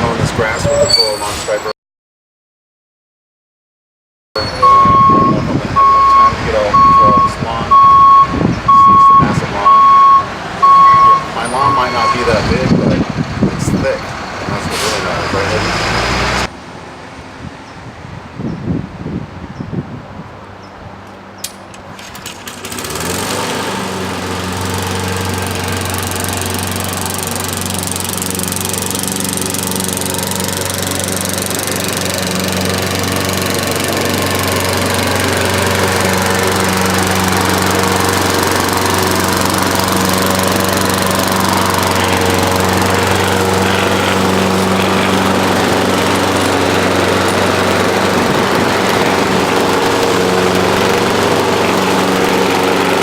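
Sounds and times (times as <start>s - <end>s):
lawn mower engine running: 4.4s - 12.7s, 21.6s - 53.0s.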